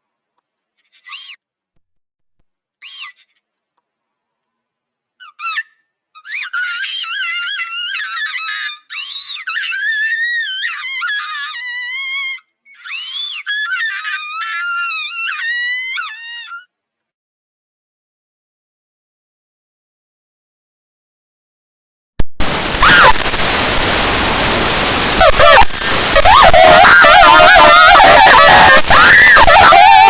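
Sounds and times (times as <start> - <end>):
high-pitched cartoon crying: 5.2 - 16.7, 25.1 - 30.0.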